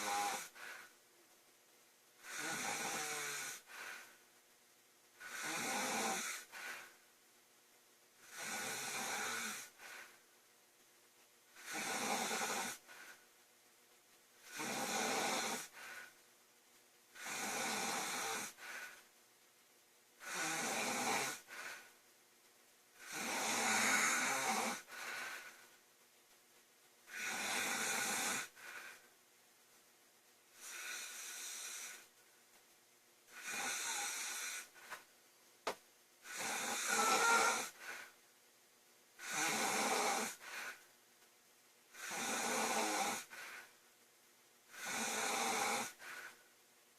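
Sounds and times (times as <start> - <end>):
woman snoring loudly: 0.0 - 0.9, 2.2 - 4.1, 5.2 - 6.9, 8.2 - 10.1, 11.6 - 13.2, 14.4 - 16.1, 17.2 - 19.0, 20.2 - 21.8, 23.0 - 25.5, 27.1 - 29.0, 30.6 - 32.1, 33.3 - 34.8, 36.2 - 38.1, 39.2 - 40.8, 41.9 - 43.7, 44.7 - 46.4.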